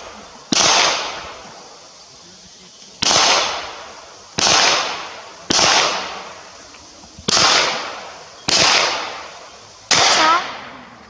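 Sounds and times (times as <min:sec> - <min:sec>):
gunshots with echoing tail: 0:00.0 - 0:01.5, 0:03.0 - 0:06.5, 0:07.3 - 0:10.9.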